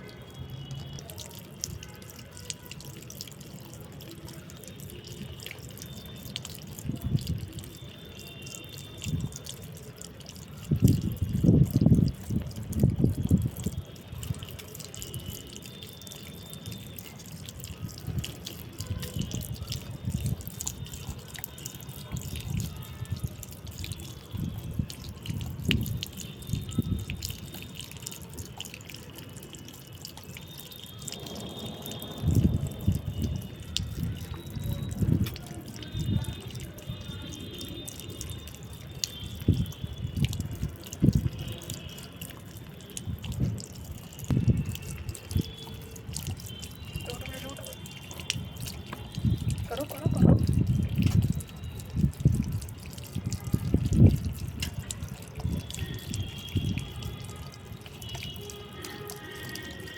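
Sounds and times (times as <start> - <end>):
water dripping and splashing: 0.0 - 59.9.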